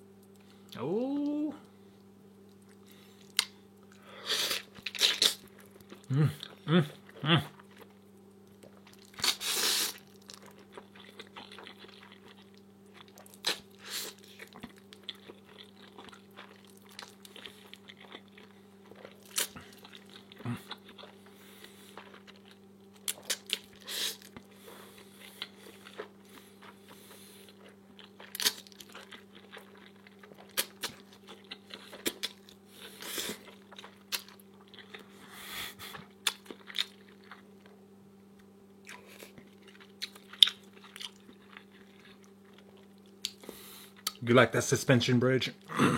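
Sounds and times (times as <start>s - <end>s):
low electrical hum: 0.0s - 45.9s
person chewing with crunches: 0.1s - 44.4s
wet mouth smacks: 3.3s - 3.6s.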